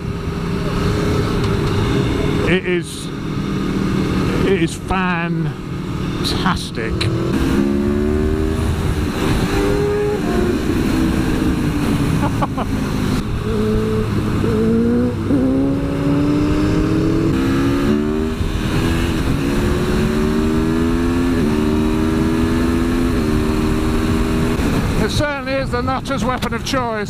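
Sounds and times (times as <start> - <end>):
motorcycle engine accelerating: 0.0 - 25.6
wind buffeting on microphone: 7.0 - 20.8.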